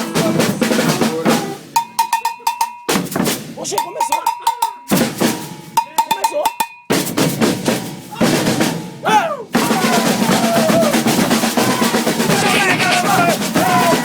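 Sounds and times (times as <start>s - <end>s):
snare drums: 0.0s - 14.0s
bass drums: 9.7s - 14.0s
shakers: 11.8s - 14.0s.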